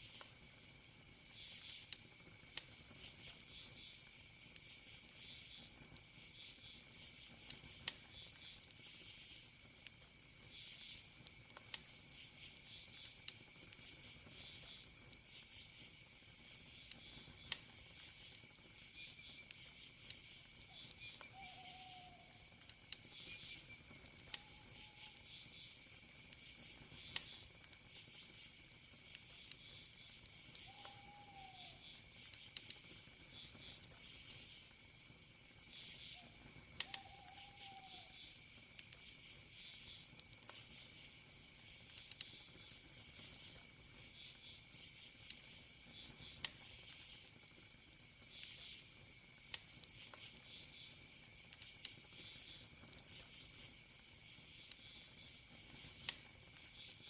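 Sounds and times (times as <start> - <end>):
burning wood popping: 0.0 - 57.0
campfire crackling: 0.0 - 57.0
cricket trill: 0.0 - 57.0
pulsing insect chirps: 13.8 - 34.7, 35.6 - 47.3, 48.2 - 48.9
falling whistle-like calls: 20.7 - 22.4, 23.1 - 25.8, 30.5 - 32.2, 35.8 - 38.4.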